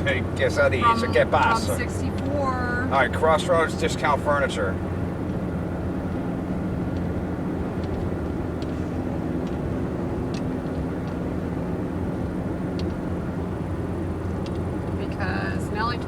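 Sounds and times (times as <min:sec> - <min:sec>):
car engine drone: 0:00.0 - 0:16.0
road noise: 0:00.0 - 0:16.0.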